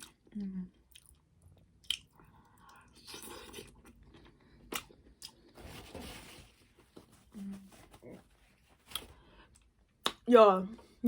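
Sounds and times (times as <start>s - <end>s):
person chewing food: 0.0s - 5.6s.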